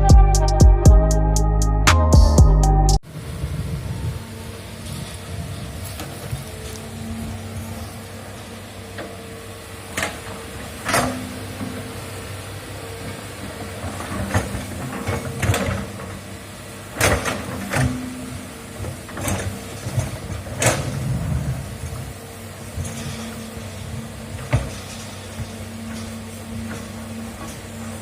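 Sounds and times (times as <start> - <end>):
excavator engine running: 0.0 - 28.0
excavator bucket clanking: 13.5 - 16.2, 16.9 - 21.4, 22.7 - 28.0.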